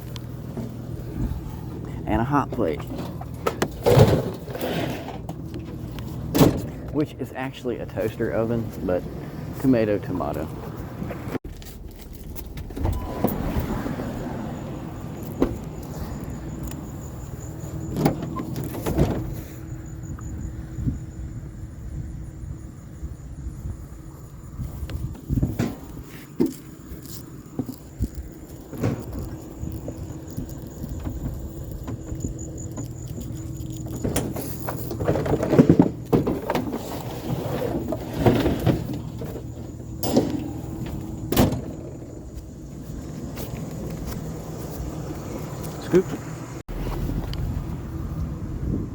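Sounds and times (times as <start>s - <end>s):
vehicle engine idling: 0.0s - 3.8s, 38.9s - 48.9s
objects clattering and knocking: 27.5s - 42.1s.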